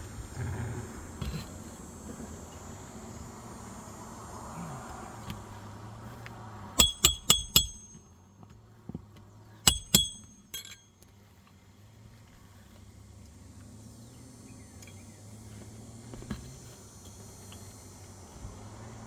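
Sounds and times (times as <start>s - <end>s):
hammer striking nails: 6.8s - 8.2s, 9.6s - 10.8s.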